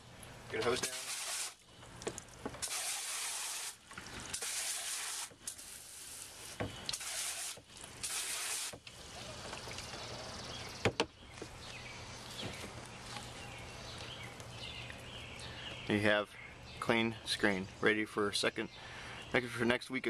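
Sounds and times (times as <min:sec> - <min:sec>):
hose nozzle spray hissing: 0:00.8 - 0:01.6, 0:02.6 - 0:08.8
sharp knocks: 0:10.8 - 0:11.1.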